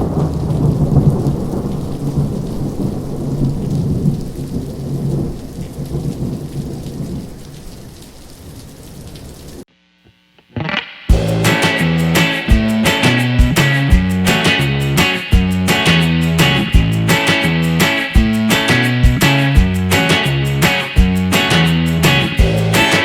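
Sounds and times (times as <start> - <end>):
low rolling thunder: 0.0 - 7.9
steady rain: 0.0 - 9.7.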